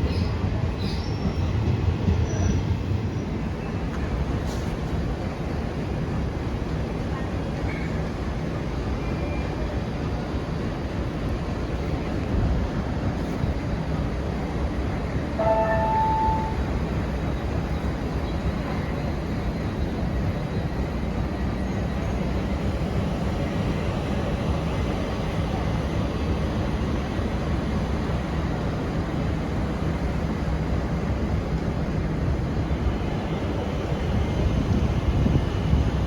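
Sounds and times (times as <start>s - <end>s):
passenger train rumble: 0.0s - 36.0s.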